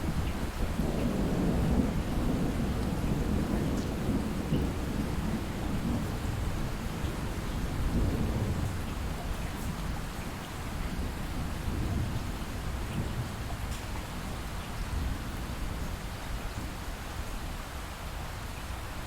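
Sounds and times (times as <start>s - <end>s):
distant thunder rumbling: 0.0s - 9.9s
light rain falling: 0.0s - 19.0s.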